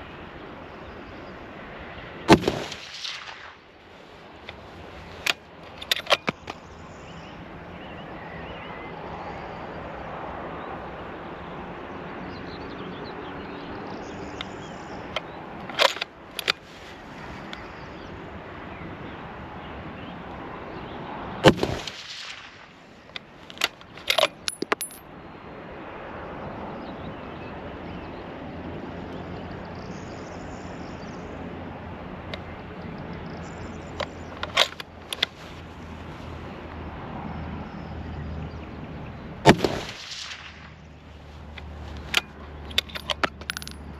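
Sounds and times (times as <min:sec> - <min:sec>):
rifle shots: 0:02.3 - 0:03.5, 0:39.5 - 0:40.6
brass casings clinking: 0:23.5 - 0:25.1, 0:42.0 - 0:43.9.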